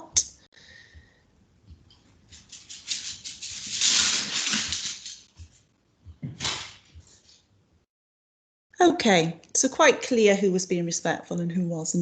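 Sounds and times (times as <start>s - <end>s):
crackly rustling handling noise: 1.7s - 5.7s.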